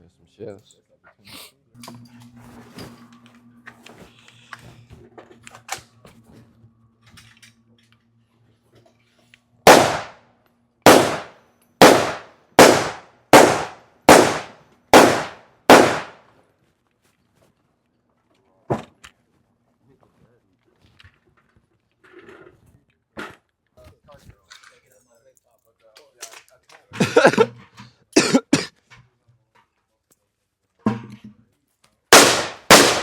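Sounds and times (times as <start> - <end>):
gunshots: 9.7 - 10.2, 10.9 - 16.2, 32.1 - 33.0.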